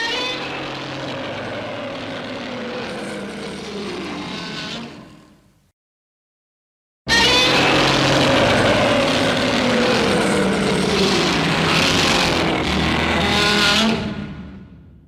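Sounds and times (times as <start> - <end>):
monster screeching roar: 0.0 - 5.2, 7.1 - 14.6.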